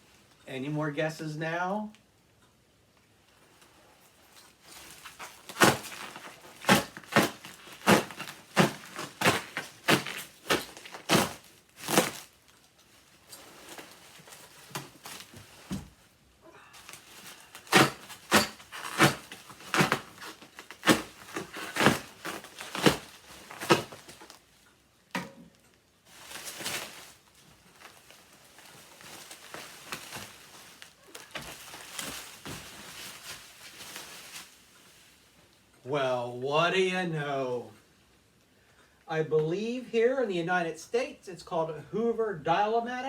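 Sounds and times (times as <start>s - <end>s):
plastic crinkling: 3.3s - 24.6s, 26.0s - 35.7s
packing tape ripping: 4.4s - 15.8s, 16.8s - 24.4s, 26.1s - 34.5s.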